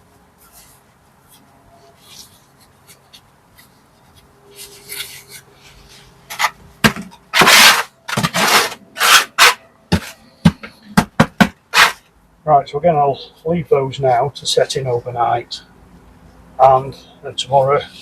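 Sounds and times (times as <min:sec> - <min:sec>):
hand tools scraping on brick: 0:04.6 - 0:12.1.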